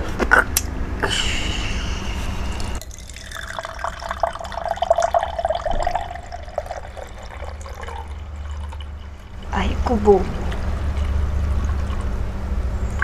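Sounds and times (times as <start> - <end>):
drink pouring into a glass: 2.5 - 9.5, 10.3 - 12.2.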